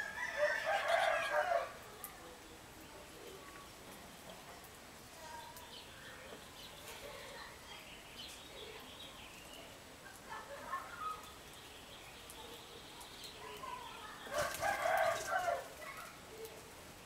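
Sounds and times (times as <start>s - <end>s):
rooster crowing: 0.0s - 1.8s, 14.3s - 15.7s.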